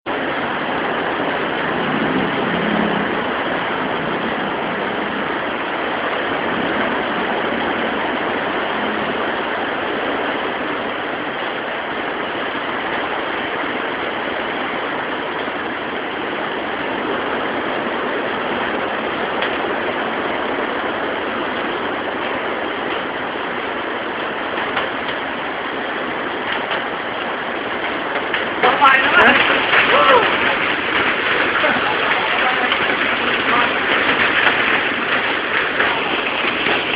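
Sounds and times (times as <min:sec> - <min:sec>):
heavy pouring rain: 0:00.0 - 0:36.9.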